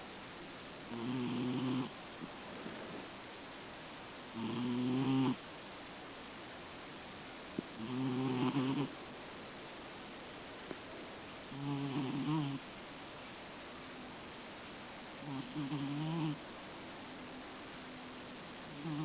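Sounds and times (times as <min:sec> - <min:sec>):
cat snoring: 0:00.9 - 0:02.0, 0:04.3 - 0:05.4, 0:07.8 - 0:09.0, 0:11.5 - 0:12.6, 0:15.2 - 0:16.4, 0:18.7 - 0:19.0.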